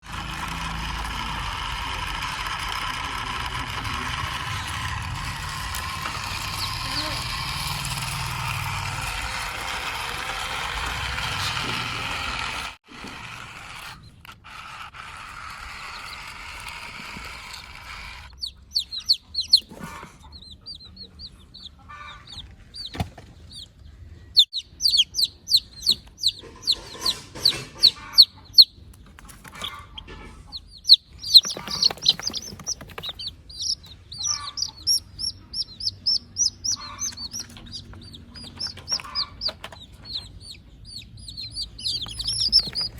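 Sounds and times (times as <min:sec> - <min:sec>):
mechanical running noise: 0:00.0 - 0:20.0, 0:30.9 - 0:42.9
chickens chirping and clucking: 0:18.2 - 0:42.9.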